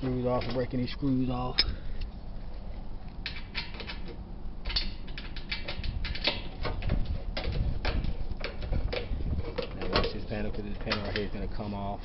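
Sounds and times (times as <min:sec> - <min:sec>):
screwdriver clicking and creaking: 0:03.2 - 0:10.2.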